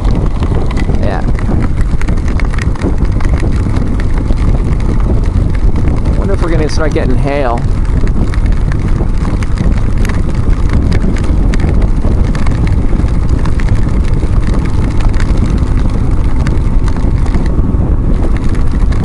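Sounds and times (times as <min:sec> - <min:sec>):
motorcycle engine running: 0:00.0 - 0:19.0
raindrops ticking on camera: 0:00.0 - 0:19.0
wind rush on microphone: 0:00.0 - 0:19.0.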